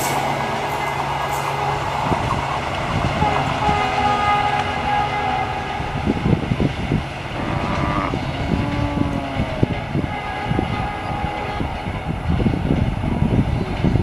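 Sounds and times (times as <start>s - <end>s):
clacks over rail joints: 0.0s - 4.9s
train wheels rumbling on rail: 0.0s - 14.0s.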